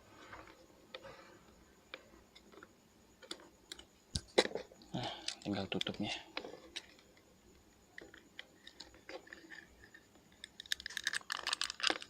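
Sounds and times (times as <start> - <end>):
plastic clicking and scraping: 8.0 - 12.0.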